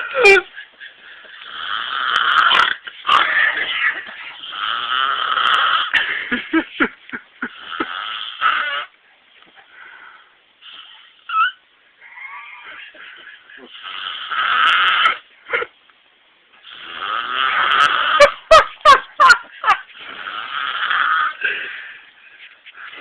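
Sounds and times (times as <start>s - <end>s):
man snoring: 1.4s - 3.6s, 4.4s - 6.0s, 7.5s - 8.9s, 13.6s - 15.2s, 16.6s - 18.4s, 20.0s - 21.5s.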